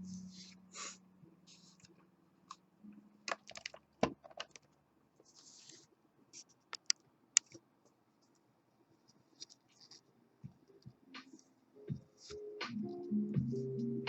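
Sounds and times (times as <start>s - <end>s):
small metallic clicks and taps: 6.7s - 7.6s.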